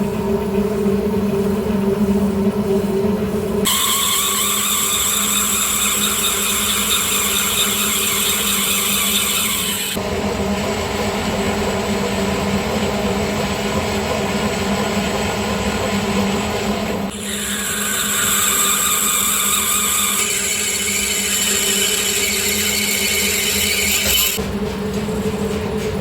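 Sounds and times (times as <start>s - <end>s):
metal lathe motor hum: 0.0s - 24.4s
hiss of metal cutting: 3.7s - 10.0s.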